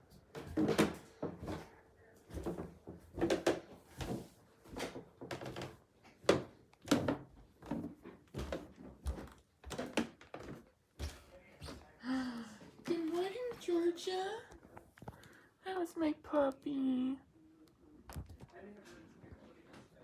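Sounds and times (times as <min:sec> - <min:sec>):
footsteps on wooden stairs: 0:00.3 - 0:01.7, 0:02.3 - 0:11.8.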